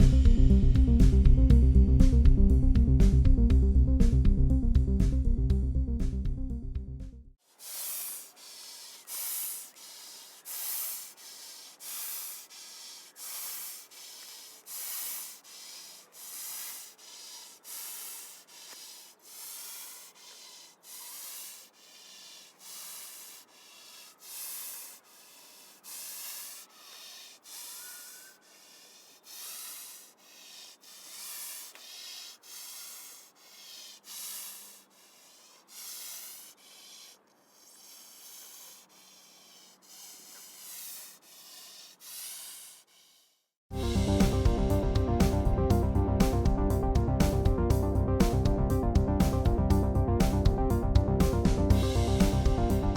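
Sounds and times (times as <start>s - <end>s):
goose hissing: 7.5s - 43.4s.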